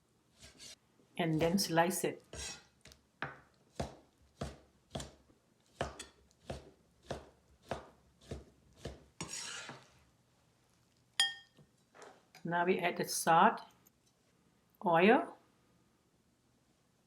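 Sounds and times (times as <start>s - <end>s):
knife slicing meat on cutting board: 5.8s - 9.9s
knife swish: 9.2s - 9.8s.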